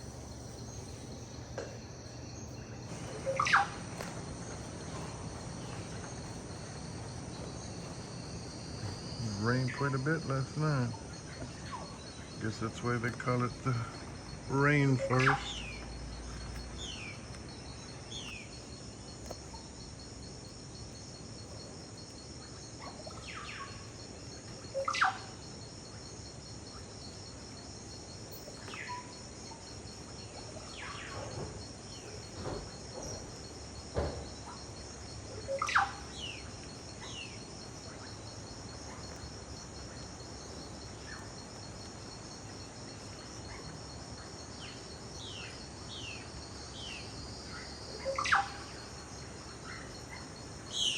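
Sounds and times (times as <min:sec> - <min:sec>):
insect chorus trilling: 0:00.0 - 0:50.9
birds whistling downward calls: 0:02.4 - 0:08.1, 0:35.4 - 0:37.3, 0:48.0 - 0:48.9.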